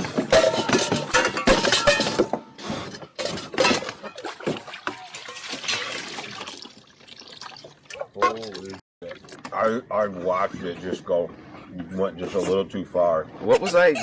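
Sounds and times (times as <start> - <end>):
water splashing: 4.0 - 9.4.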